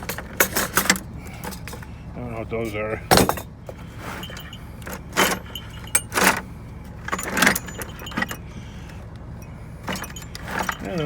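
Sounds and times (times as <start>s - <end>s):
metal hand tools clanking: 0.0s - 1.8s, 4.1s - 8.6s, 9.4s - 11.0s.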